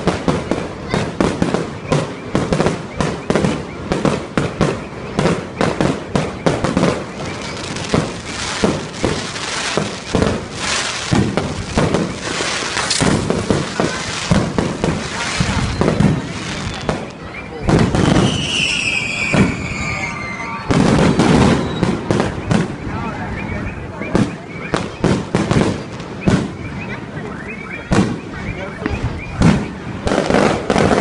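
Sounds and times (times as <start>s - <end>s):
fireworks bangs: 0.0s - 31.0s
fireworks hiss: 7.1s - 17.1s.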